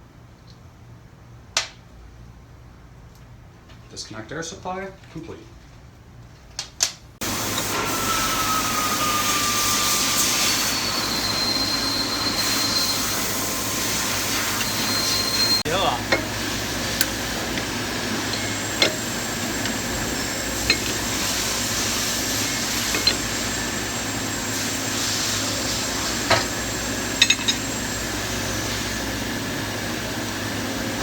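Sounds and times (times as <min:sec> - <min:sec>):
background hiss and hum: 0:00.0 - 0:31.0
metal tools clicking and clinking: 0:17.0 - 0:21.6, 0:22.4 - 0:23.5, 0:27.1 - 0:27.8.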